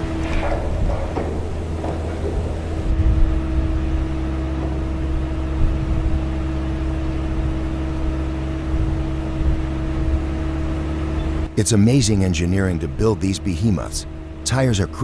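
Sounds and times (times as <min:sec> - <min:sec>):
diesel engine droning: 0:00.0 - 0:15.0
steady hum: 0:00.0 - 0:15.0.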